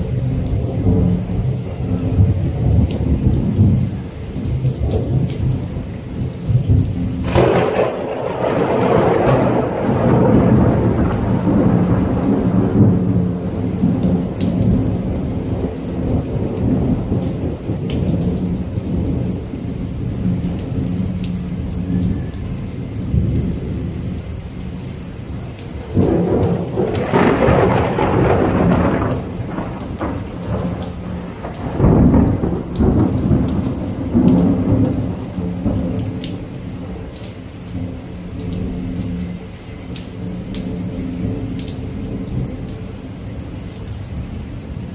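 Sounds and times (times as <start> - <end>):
steady rain: 0.0 - 44.9
rolling thunder: 6.5 - 21.2, 25.9 - 37.0.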